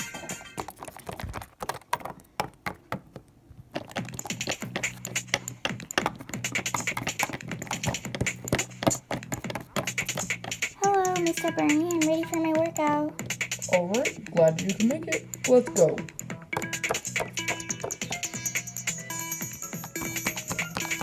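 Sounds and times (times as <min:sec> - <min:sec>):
plastic toys tapping on hard surface: 0:16.5 - 0:18.2.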